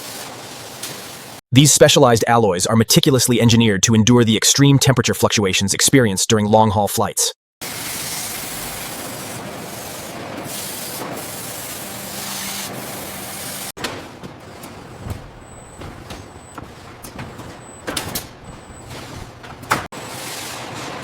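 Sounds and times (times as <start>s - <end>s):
steady factory hiss: 7.6s - 13.7s.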